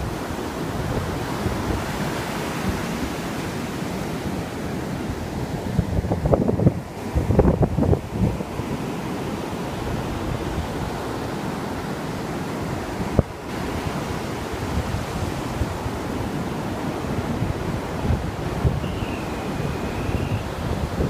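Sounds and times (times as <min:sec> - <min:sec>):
wind buffeting microphone: 0:00.0 - 0:03.9, 0:04.5 - 0:11.4, 0:12.6 - 0:21.0
ocean surf washing in: 0:00.0 - 0:21.0.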